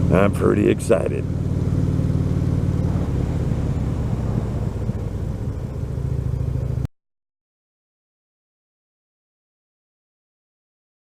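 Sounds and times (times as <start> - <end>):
motorcycle engine deep rumble: 0.0 - 6.9.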